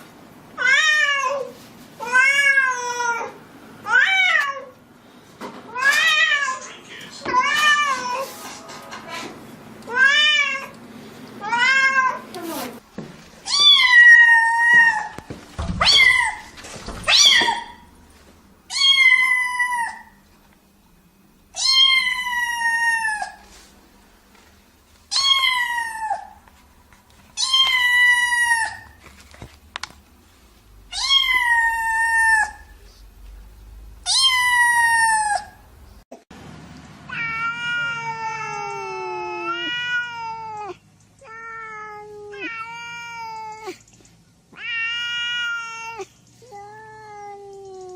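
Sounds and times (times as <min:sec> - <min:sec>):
cat meowing: 0:13.4 - 0:15.2, 0:15.8 - 0:17.8, 0:18.7 - 0:20.2, 0:21.6 - 0:23.4, 0:25.1 - 0:26.4, 0:27.4 - 0:29.0, 0:30.9 - 0:33.0, 0:34.0 - 0:35.6, 0:37.1 - 0:43.8, 0:44.5 - 0:47.9.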